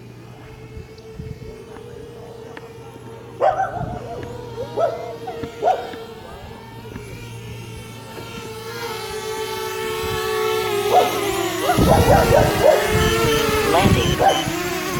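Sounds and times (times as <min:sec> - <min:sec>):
steady hum: 0:00.0 - 0:14.9
dog barking: 0:02.5 - 0:06.5, 0:10.9 - 0:13.0, 0:13.7 - 0:14.5.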